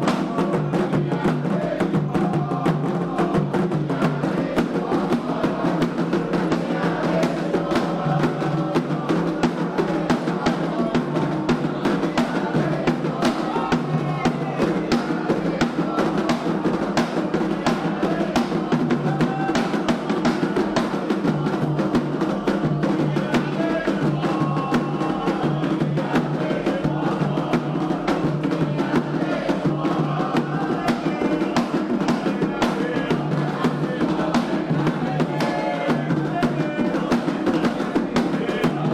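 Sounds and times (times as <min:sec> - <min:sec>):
fast hand drumming: 0:00.0 - 0:38.9.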